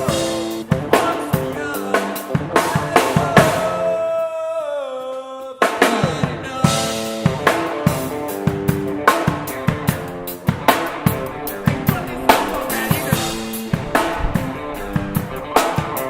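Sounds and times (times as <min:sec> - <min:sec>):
drum kit kick and snare: 0:00.0 - 0:03.8, 0:05.7 - 0:16.0
sustained guitar chords: 0:07.2 - 0:16.0.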